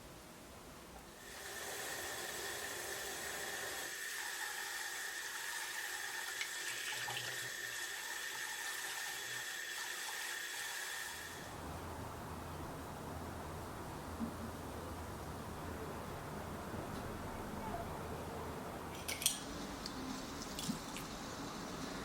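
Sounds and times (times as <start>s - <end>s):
tap water running into sink: 1.3s - 11.0s, 19.1s - 22.0s.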